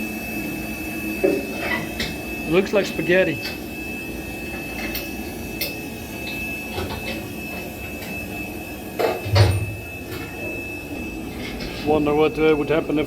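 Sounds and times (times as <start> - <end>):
thin high whine: 0.0 - 13.0.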